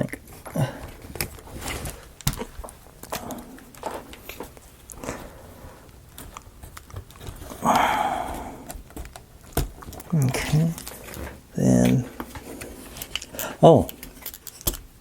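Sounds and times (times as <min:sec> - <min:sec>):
wooden parts clicking and tapping: 0:05.9 - 0:14.9.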